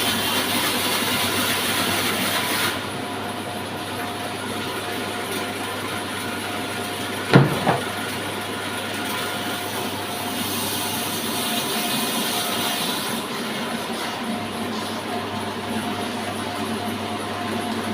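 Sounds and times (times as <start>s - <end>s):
sawmill machine running: 0.0s - 17.9s
sharp knock: 7.3s - 7.9s.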